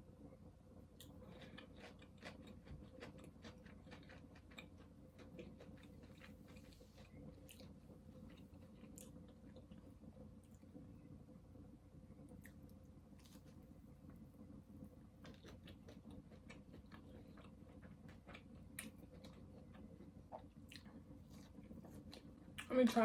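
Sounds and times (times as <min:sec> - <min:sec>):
faint steady hum: 0:00.0 - 0:23.0
chewing and biting crunches: 0:01.0 - 0:09.9, 0:15.2 - 0:22.7.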